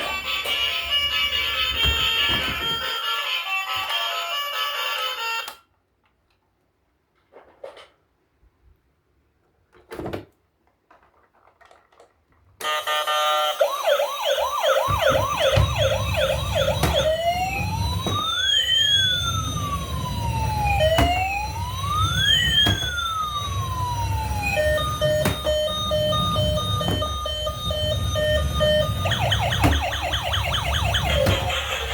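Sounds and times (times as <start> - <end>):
toy siren: 0.0 - 5.6, 12.6 - 31.9.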